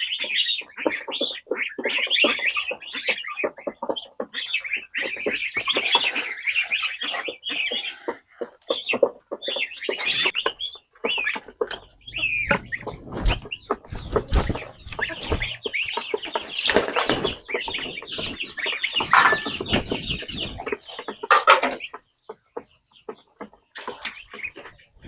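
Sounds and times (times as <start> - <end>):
chickens clucking: 0.0 - 25.0
wings flapping: 12.1 - 21.5
knocks and scuffles: 12.5 - 20.6.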